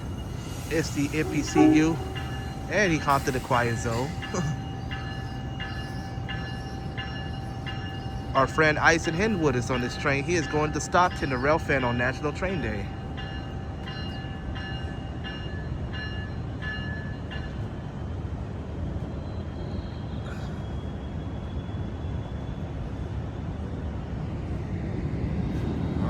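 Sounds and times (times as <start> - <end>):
train bell ringing: 0.0 - 18.2
train low rumble: 0.0 - 26.0.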